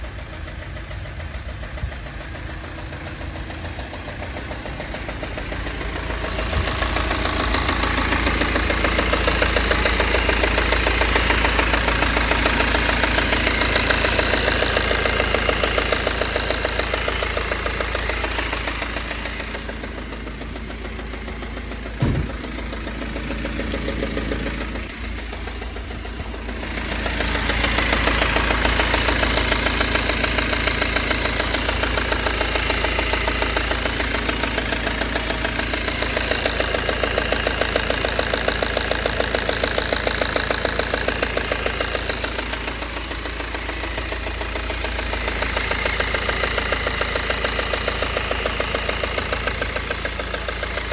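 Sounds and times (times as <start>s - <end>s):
diesel engine running: 0.0s - 50.9s
fast rhythmic engine ticking: 0.0s - 50.9s
short knock: 22.0s - 22.7s.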